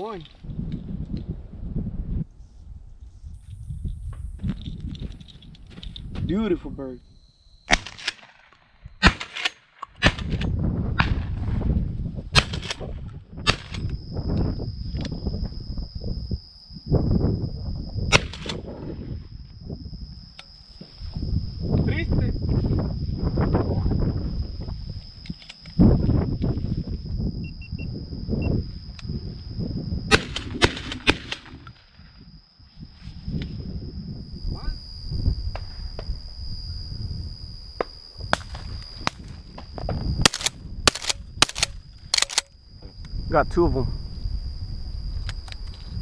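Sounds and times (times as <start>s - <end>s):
shotgun shots: 7.7s - 10.4s, 12.4s - 12.8s, 18.1s - 18.6s, 30.1s - 31.6s
high-pitched whine: 13.1s - 41.4s.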